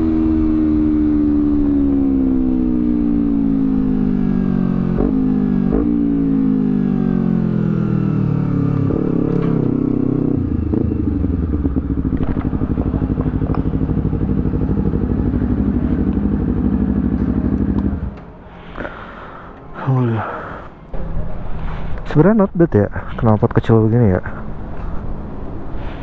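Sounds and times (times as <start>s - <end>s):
motorcycle engine revving and idling: 0.0s - 18.3s.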